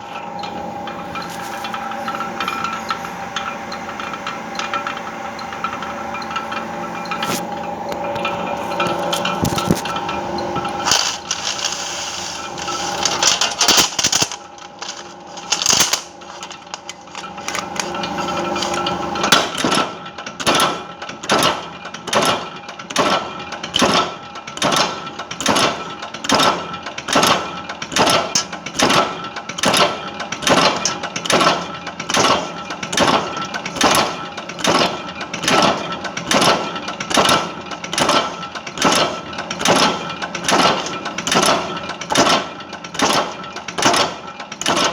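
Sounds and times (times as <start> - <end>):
steady machine hum: 0.0 - 20.2
machine clacking rhythmically: 10.0 - 44.9.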